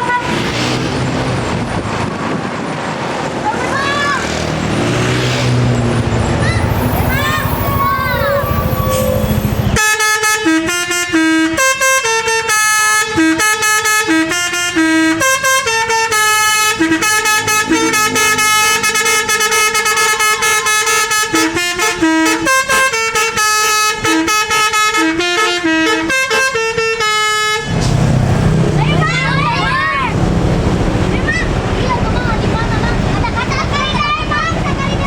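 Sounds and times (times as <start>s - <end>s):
bus horn playing fast melody: 0.0s - 0.6s, 7.1s - 27.8s.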